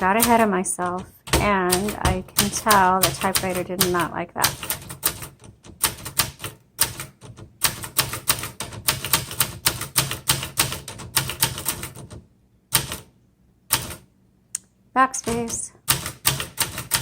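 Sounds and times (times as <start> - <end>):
typewriter keystrokes: 0.0 - 13.1, 13.7 - 14.0, 15.2 - 17.0.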